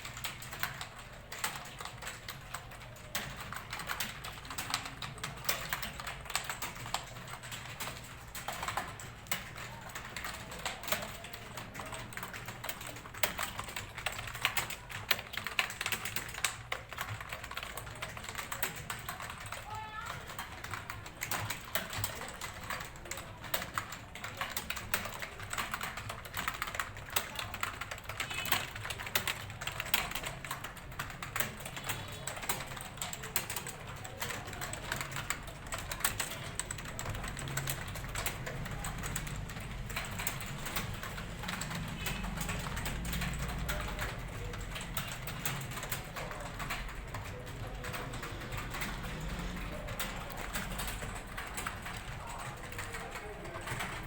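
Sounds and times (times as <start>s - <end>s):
fast keyboard typing: 0.0s - 54.0s.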